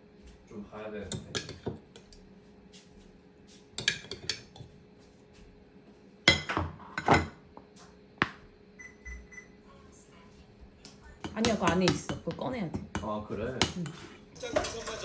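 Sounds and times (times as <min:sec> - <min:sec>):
dishes and cutlery clinking: 0:01.0 - 0:02.2, 0:03.8 - 0:04.7, 0:06.3 - 0:07.4, 0:11.2 - 0:15.0.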